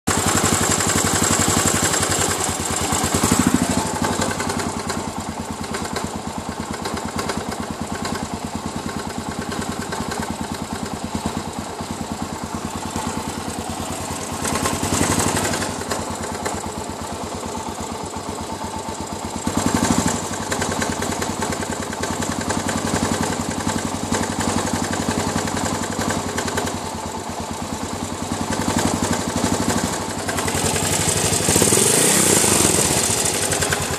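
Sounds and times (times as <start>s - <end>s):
knocking inside engine: 0.1s - 33.9s
motorcycle engine idling: 0.1s - 33.9s.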